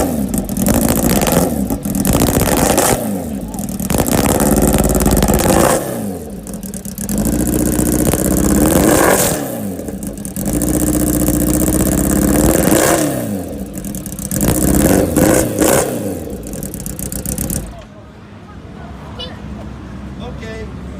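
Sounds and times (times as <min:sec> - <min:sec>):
motorcycle engine revving: 0:00.0 - 0:17.8.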